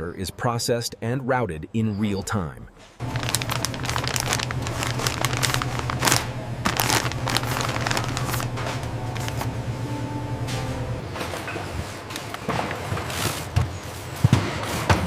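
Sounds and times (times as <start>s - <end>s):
irregular crackling and clicking: 3.0s - 9.5s
machinery humming: 3.0s - 11.8s.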